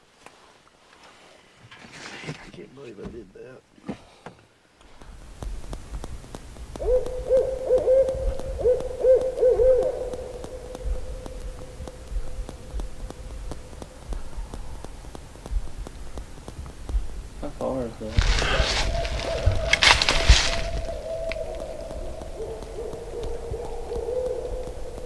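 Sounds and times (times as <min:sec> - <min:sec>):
owl hooting: 0:05.0 - 0:25.0.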